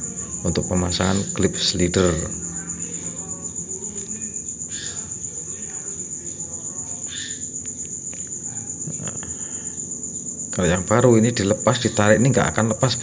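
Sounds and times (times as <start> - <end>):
high-pitched pulsing trill: 0.0 - 6.2
low background hum: 0.0 - 13.0.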